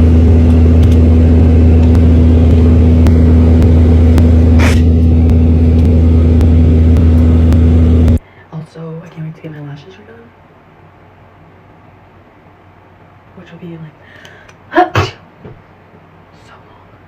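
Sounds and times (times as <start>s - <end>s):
loud low rumble: 0.0s - 8.2s
droning hum: 0.0s - 15.1s.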